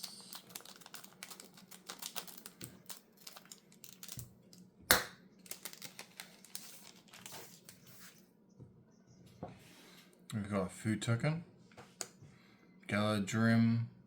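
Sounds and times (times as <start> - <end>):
cards rustling and clicking: 0.0 - 4.6, 5.4 - 8.2
foil wrapper crinkling: 0.0 - 4.7, 5.4 - 8.2.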